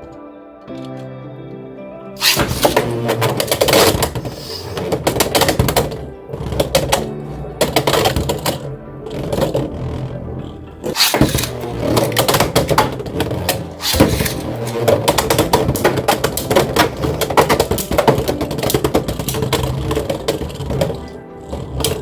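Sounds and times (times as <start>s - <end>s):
background music: 0.0s - 22.0s
spinning tops whirring and clattering: 2.2s - 6.1s, 10.9s - 22.0s.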